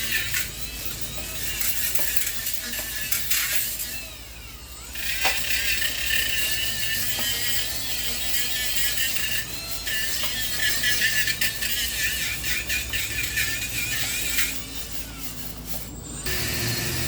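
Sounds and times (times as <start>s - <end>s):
power sander whining on metal: 0.0s - 17.0s.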